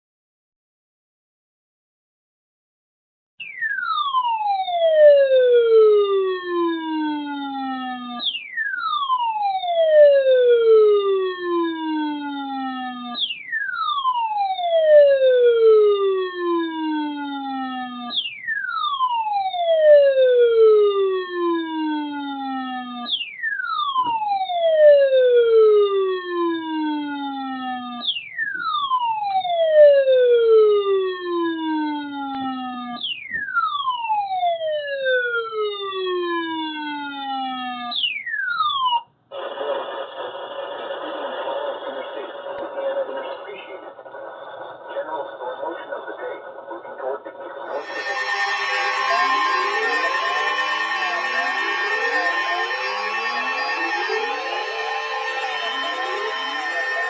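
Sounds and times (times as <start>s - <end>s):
falling electronic alert tone: 47.7s - 57.0s.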